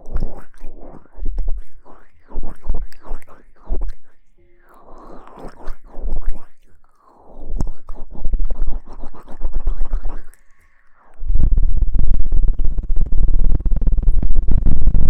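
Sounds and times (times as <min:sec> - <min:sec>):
scratching on microphone: 0:07.5 - 0:10.4
heavy low rumble: 0:11.3 - 0:15.0.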